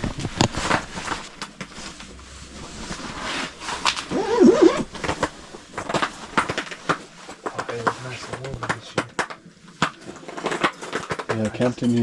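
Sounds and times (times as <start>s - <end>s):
rustling: 0.0s - 8.9s.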